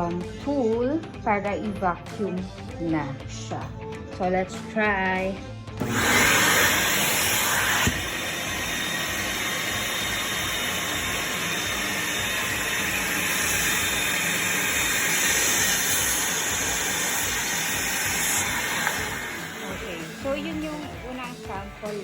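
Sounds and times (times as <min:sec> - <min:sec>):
wet vacuum sucking water: 0:05.8 - 0:21.5.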